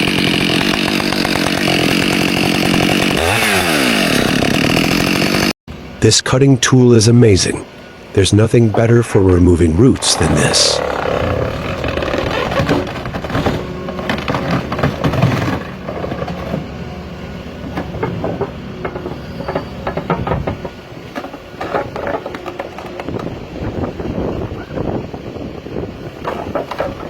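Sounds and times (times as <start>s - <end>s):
machine engine under load: 8.0s - 23.0s
roots cracking and knocking: 10.0s - 16.7s.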